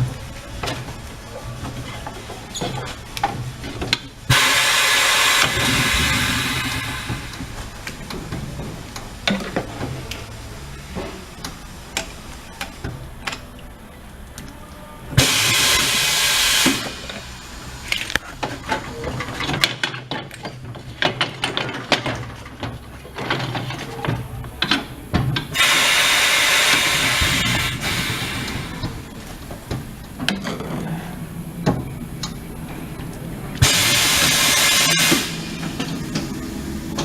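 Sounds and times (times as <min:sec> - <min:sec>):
compressed air hissing: 0:04.3 - 0:07.6, 0:15.2 - 0:17.6, 0:25.6 - 0:29.1, 0:33.6 - 0:35.7.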